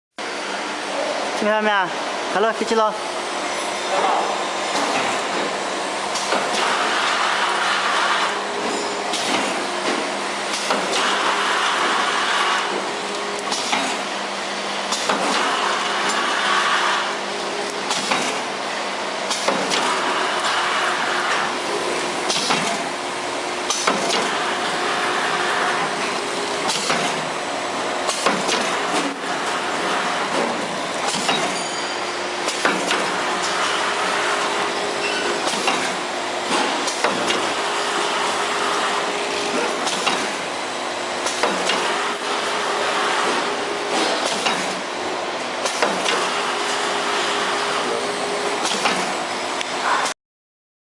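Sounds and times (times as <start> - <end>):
packaging machine running: 3.0 - 50.1
machine knocks: 19.3 - 20.0, 23.7 - 24.4, 28.1 - 29.2, 32.4 - 33.2, 35.4 - 37.5, 41.3 - 42.0, 45.7 - 46.3.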